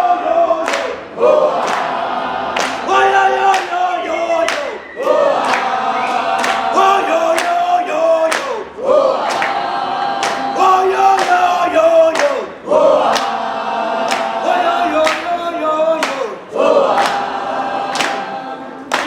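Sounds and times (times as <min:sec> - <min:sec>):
crowd chanting: 0:00.0 - 0:19.0
hands clapping in rhythm: 0:00.6 - 0:19.0.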